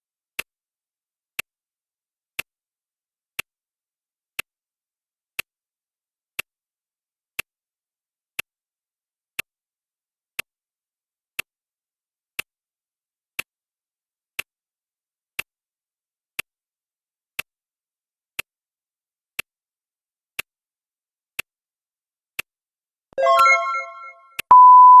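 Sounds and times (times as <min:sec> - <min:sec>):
chime ringing: 0:23.2 - 0:24.2
loud steady beep: 0:23.2 - 0:25.0.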